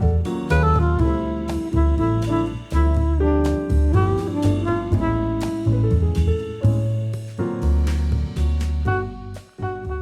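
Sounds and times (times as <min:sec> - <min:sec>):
instrumental music with bass: 0:00.0 - 0:10.0.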